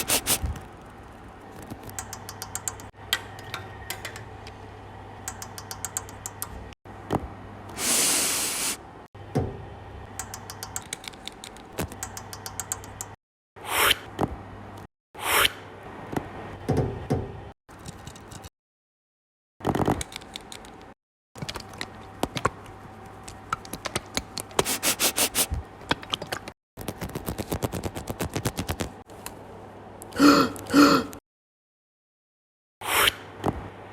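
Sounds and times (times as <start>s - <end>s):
scattered clicks: 1.6s - 4.2s, 5.2s - 6.6s, 10.2s - 13.2s.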